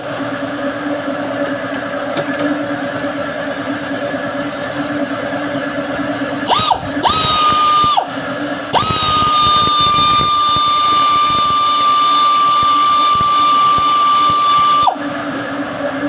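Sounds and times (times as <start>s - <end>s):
power tool motor whining: 6.4s - 8.1s, 8.7s - 15.0s.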